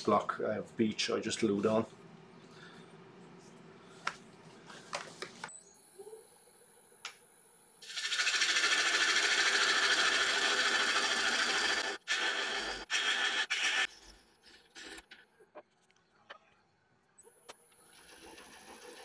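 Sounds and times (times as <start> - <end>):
faint high whine: 5.4 - 7.8.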